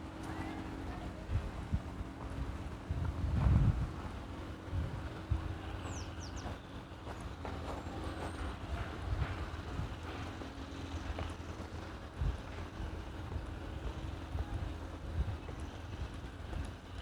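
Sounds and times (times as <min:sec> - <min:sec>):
wind rumbling on microphone: 0:01.3 - 0:05.6.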